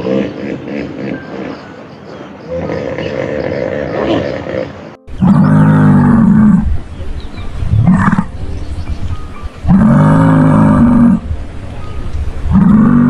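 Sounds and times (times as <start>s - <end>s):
cow mooing: 2.6s - 8.3s, 9.6s - 11.8s, 12.4s - 13.0s.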